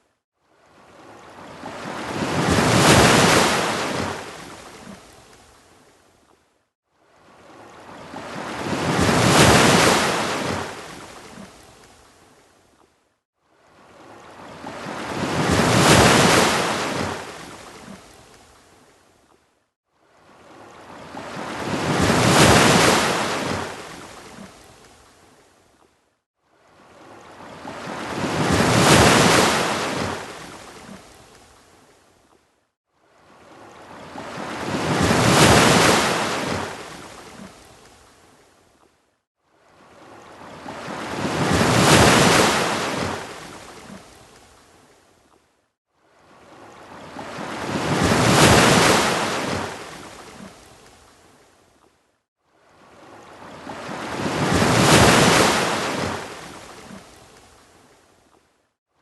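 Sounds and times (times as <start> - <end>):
ocean waves crashing on beach: 0.6 - 5.3, 7.1 - 11.9, 13.6 - 18.4, 20.1 - 25.1, 26.6 - 31.5, 33.2 - 38.2, 39.7 - 44.6, 46.2 - 51.2, 52.6 - 57.9.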